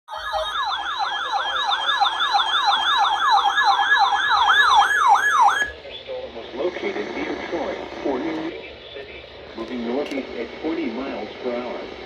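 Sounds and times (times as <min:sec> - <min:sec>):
electronic siren yelping: 0:00.1 - 0:05.8.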